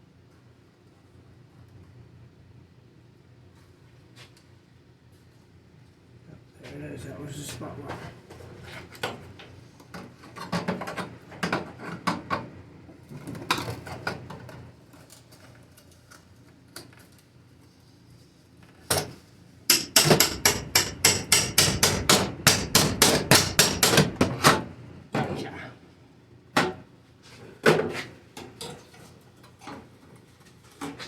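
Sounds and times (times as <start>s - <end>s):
hammer blows on sheet steel: 19.7s - 24.6s.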